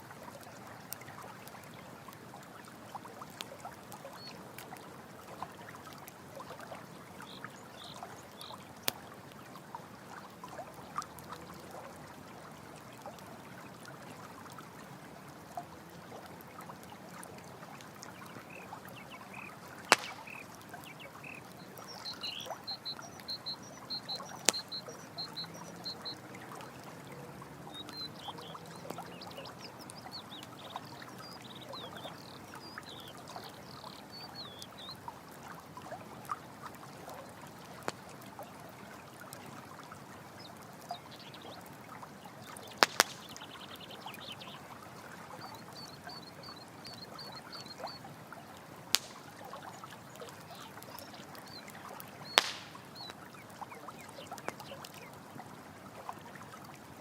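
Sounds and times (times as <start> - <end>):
stream water flowing: 0.0 - 57.0
campfire popping and crackling: 15.4 - 31.2, 42.5 - 44.1, 48.8 - 53.3.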